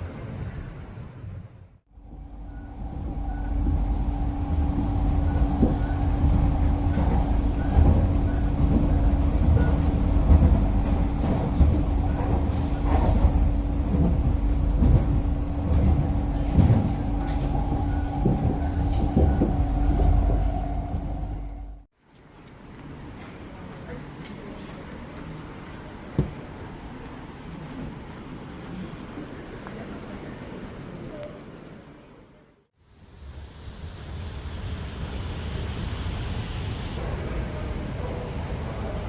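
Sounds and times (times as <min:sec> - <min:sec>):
train rumbling: 0:00.0 - 0:21.9, 0:32.9 - 0:39.0.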